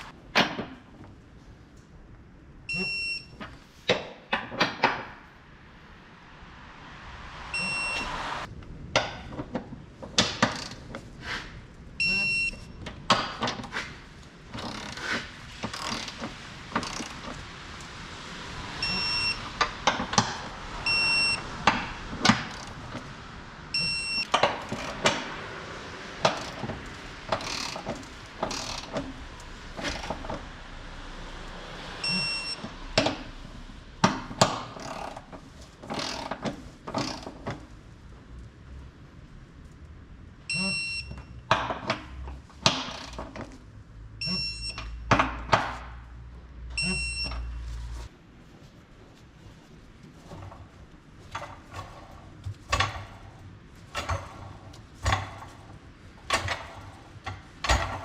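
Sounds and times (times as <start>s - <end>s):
short electronic beep: 7.5s - 8.2s, 18.8s - 19.4s, 23.8s - 24.2s, 32.0s - 32.6s.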